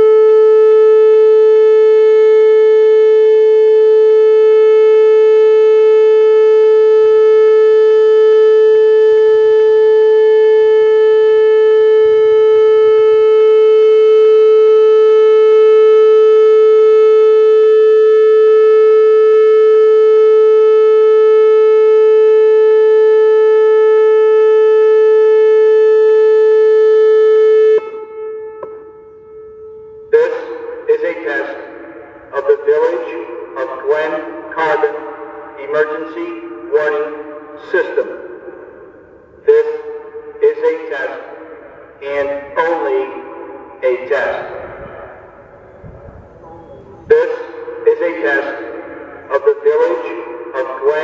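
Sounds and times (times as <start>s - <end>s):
steady warning siren tone: 0.0s - 51.0s
recorded voice message: 30.1s - 31.7s, 32.3s - 35.0s, 35.6s - 38.2s, 39.4s - 41.3s, 42.0s - 43.2s, 43.8s - 44.6s, 45.9s - 51.0s.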